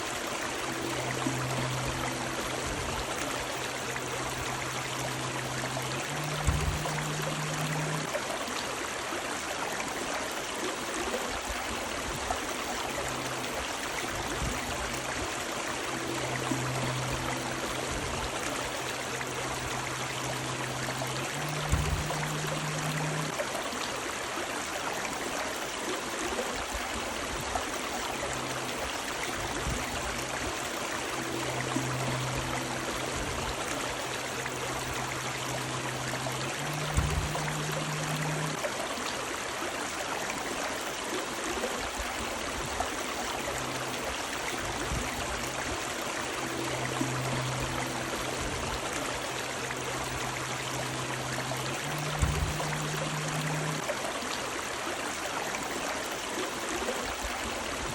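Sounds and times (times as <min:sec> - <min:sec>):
faint low hum: 0:00.0 - 0:08.2, 0:12.5 - 0:23.4, 0:27.5 - 0:38.8, 0:43.0 - 0:53.9
river water rushing: 0:00.0 - 0:57.9.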